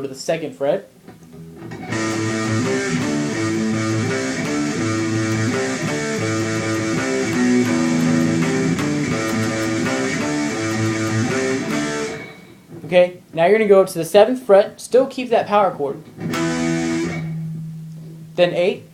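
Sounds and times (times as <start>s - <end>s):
guitar power-chord riff: 1.3s - 12.7s, 16.2s - 18.6s.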